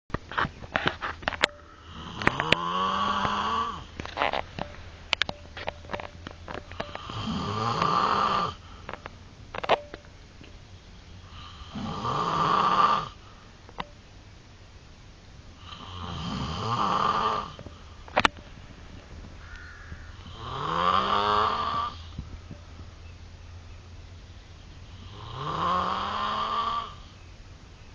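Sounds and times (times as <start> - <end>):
man snoring heavily: 1.8 - 3.9, 6.9 - 8.7, 11.2 - 13.2, 15.6 - 17.6, 20.2 - 22.2, 24.9 - 27.2.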